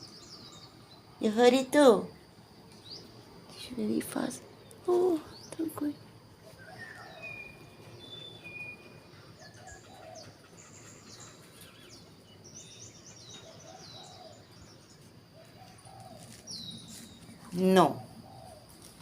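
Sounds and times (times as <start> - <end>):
songbird fast high chirps: 5.2 - 15.0.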